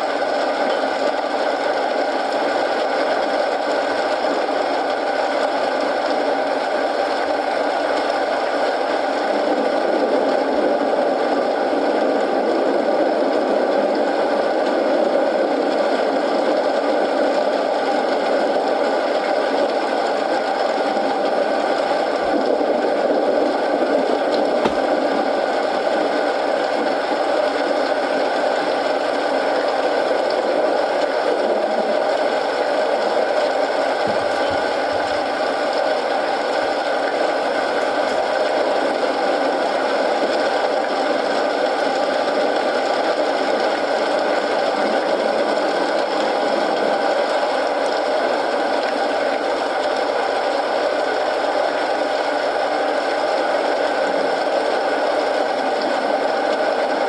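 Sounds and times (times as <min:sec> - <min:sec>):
steady rain: 0:00.0 - 0:57.0
wood fire crackling and popping: 0:23.5 - 0:26.3, 0:33.9 - 0:39.1.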